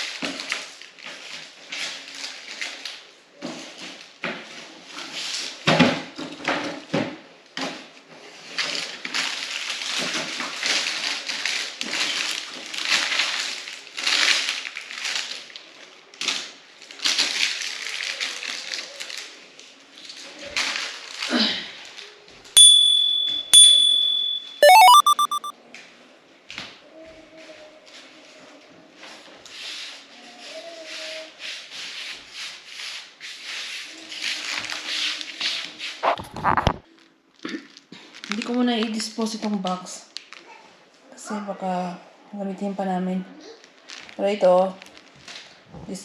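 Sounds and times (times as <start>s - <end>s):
short high beeps: 22.6s - 25.5s
brief rising tone: 24.6s - 25.5s.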